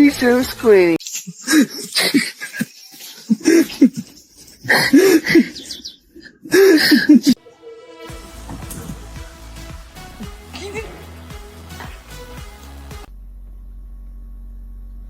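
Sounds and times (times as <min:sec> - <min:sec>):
music: 0:07.4 - 0:13.1.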